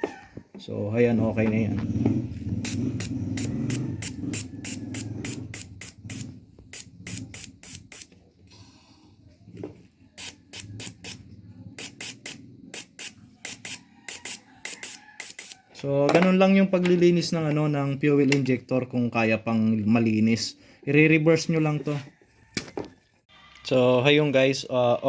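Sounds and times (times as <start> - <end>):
fuel injector hissing sprays: 2.6 - 8.1, 10.2 - 11.2, 11.8 - 15.6.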